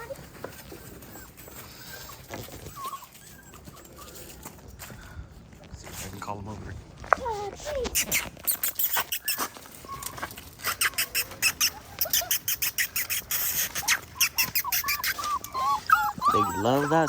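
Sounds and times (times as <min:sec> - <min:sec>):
person making kissing clicks: 0:07.8 - 0:09.4, 0:10.6 - 0:15.2.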